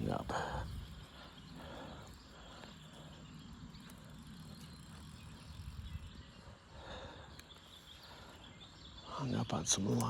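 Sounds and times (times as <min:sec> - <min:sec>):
faint ticks: 0:01.6 - 0:05.1, 0:07.2 - 0:08.3.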